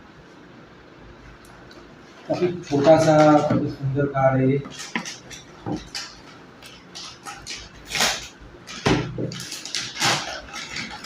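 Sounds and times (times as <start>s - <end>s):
packaging rustling and scraping: 2.1s - 3.9s, 4.6s - 11.0s.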